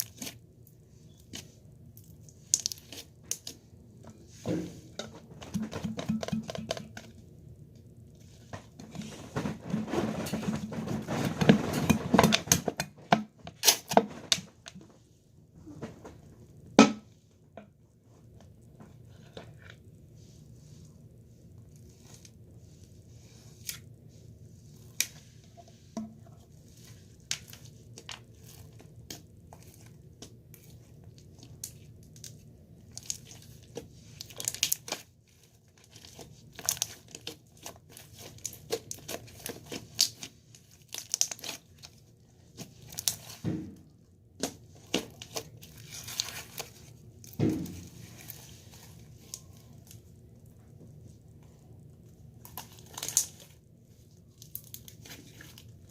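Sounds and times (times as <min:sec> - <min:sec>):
faint low hum: 0:00.0 - 0:55.9
crackling handling noises: 0:24.7 - 0:55.9.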